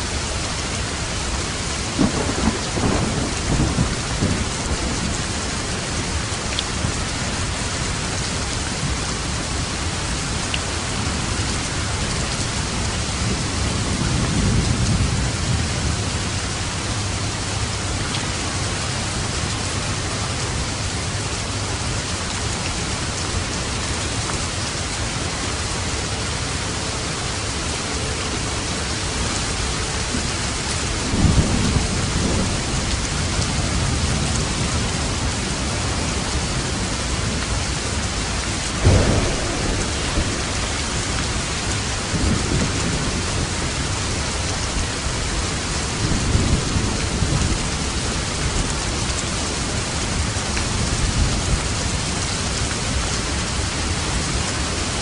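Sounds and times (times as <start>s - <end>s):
steady rain falling: 0.0s - 55.0s
thunder rolling: 2.0s - 5.8s, 38.7s - 48.0s.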